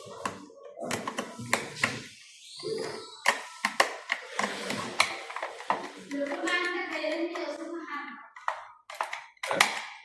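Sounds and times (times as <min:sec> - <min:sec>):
sharp clicks of handling parts: 0:08.4 - 0:10.0.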